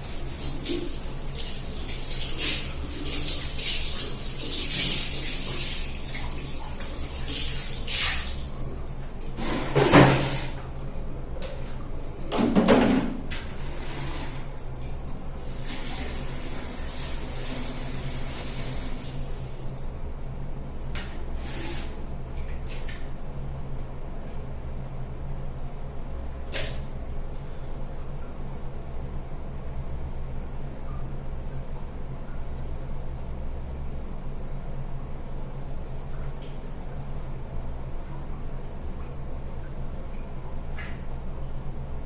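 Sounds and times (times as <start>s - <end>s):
low steady hum: 0.0s - 42.0s
tap water splashing over hair: 0.3s - 10.7s, 11.4s - 13.6s, 22.3s - 23.2s, 26.1s - 26.9s, 38.1s - 41.1s.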